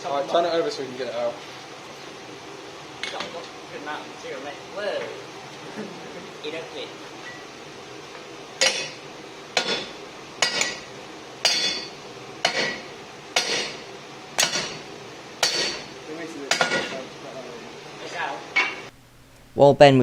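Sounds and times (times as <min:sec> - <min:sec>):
hammer striking steel: 0:08.6 - 0:09.0, 0:09.6 - 0:17.1.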